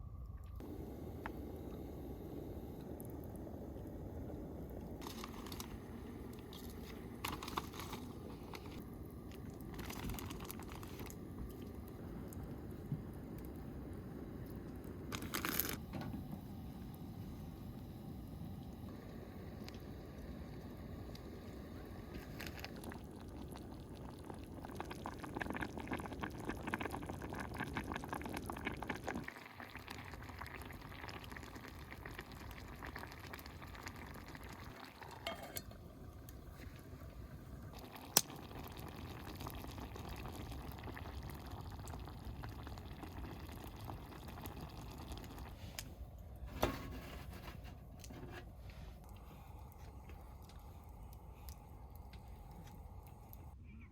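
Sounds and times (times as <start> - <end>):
liquid bubbling and splashing: 3.2 - 15.8, 19.4 - 35.3, 36.1 - 46.4.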